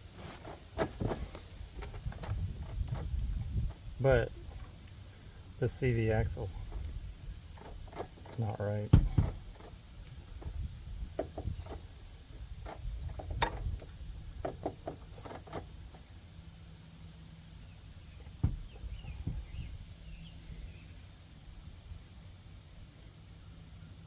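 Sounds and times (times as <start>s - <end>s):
tools knocking and clunking: 7.6s - 9.8s, 10.4s - 11.9s, 12.6s - 15.7s, 18.2s - 19.5s.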